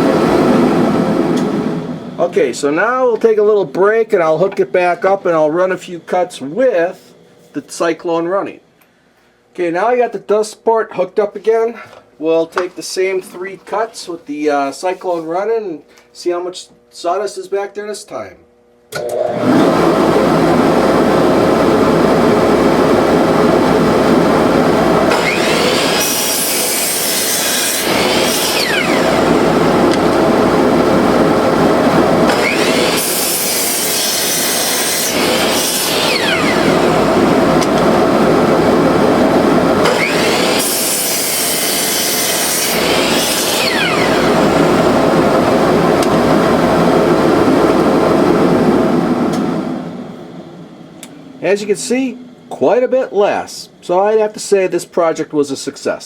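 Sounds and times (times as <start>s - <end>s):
dust collector running: 0.0s - 8.6s, 19.0s - 55.2s
chop saw cutting wood: 25.1s - 30.2s, 32.2s - 37.0s, 39.8s - 44.5s.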